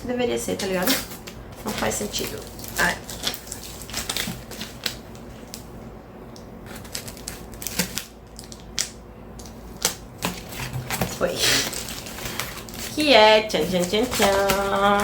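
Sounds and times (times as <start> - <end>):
cardboard box crackling: 10.2 - 15.0.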